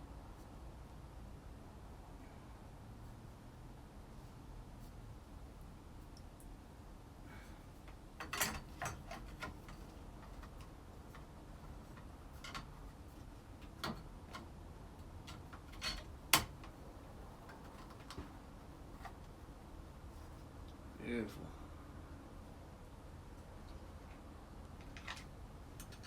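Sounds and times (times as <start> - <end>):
clicks and taps of hand tools: 15.3 - 16.8.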